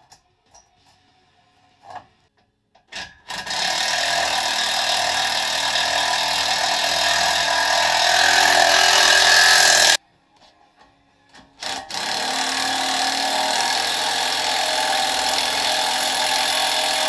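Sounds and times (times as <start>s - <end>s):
power tool whining: 3.3s - 10.0s, 11.6s - 17.0s.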